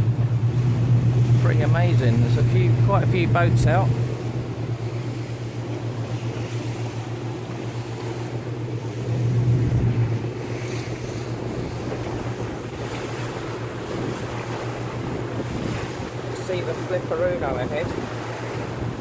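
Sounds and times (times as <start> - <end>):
speedboat engine droning: 0.0 - 19.0
water rushing past hull: 0.0 - 19.0
wind on microphone: 9.1 - 19.0.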